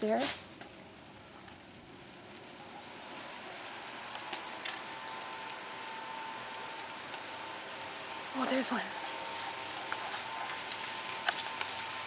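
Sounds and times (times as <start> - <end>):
dry leaves rustling in breeze: 0.0 - 12.0.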